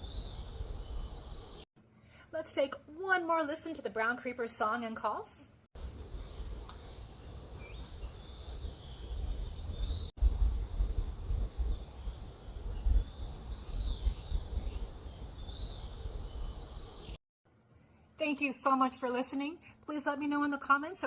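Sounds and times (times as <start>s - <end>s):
bird song of high thin notes: 0.0s - 1.6s, 6.2s - 10.1s, 11.6s - 17.2s.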